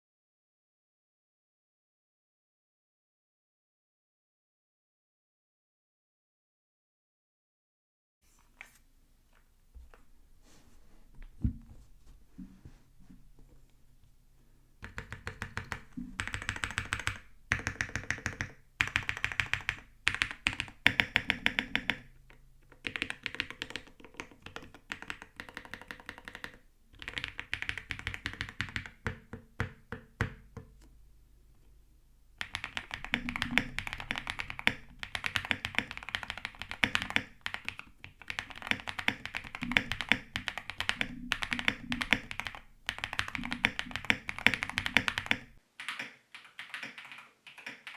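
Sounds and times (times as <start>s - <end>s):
typing on mechanical keyboard: 14.8s - 29.8s, 32.4s - 47.9s.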